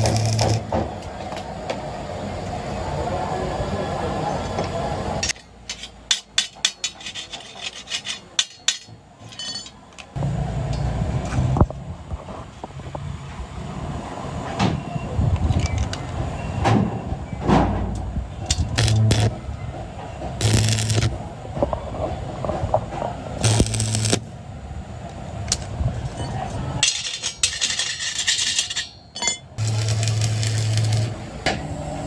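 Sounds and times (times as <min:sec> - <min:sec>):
scraping: 0:00.0 - 0:00.7, 0:05.7 - 0:09.8, 0:18.5 - 0:19.6, 0:20.3 - 0:21.3, 0:23.4 - 0:24.3, 0:26.8 - 0:31.2
low machine hum: 0:00.0 - 0:01.0, 0:18.2 - 0:21.4, 0:23.4 - 0:24.5, 0:29.6 - 0:31.4.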